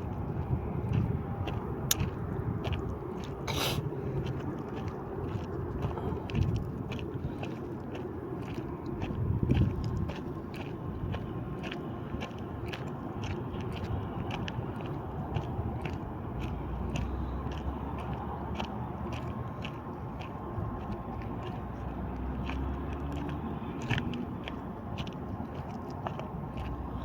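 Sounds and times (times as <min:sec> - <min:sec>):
footsteps crunching on dry trail: 0:00.0 - 0:27.0.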